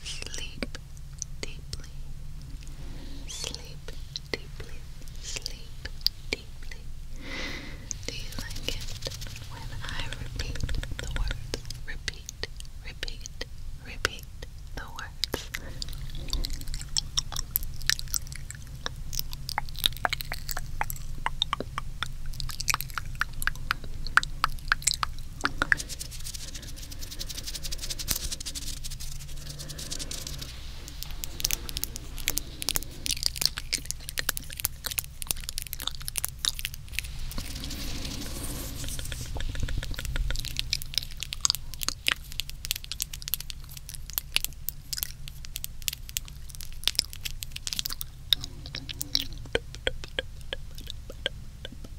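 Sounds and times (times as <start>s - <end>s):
wet mouth clicks and smacks: 0.0s - 2.7s, 3.3s - 6.8s, 7.8s - 13.5s, 14.1s - 51.9s
breathing: 2.6s - 3.5s, 7.2s - 8.5s, 15.4s - 16.9s, 25.3s - 28.5s, 29.2s - 34.1s.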